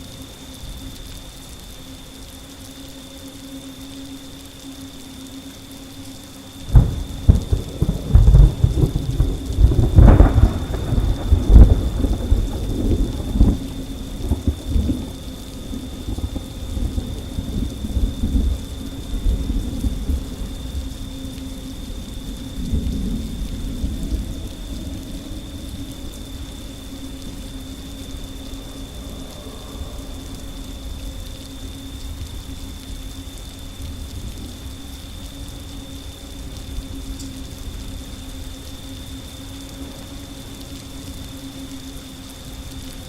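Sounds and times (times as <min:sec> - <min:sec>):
steady rain: 0:00.0 - 0:43.0
thunder rumbling: 0:06.6 - 0:43.0.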